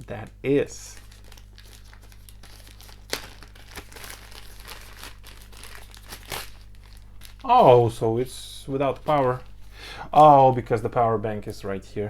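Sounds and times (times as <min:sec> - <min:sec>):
plastic packaging crinkling: 0:00.8 - 0:08.0, 0:08.7 - 0:10.3.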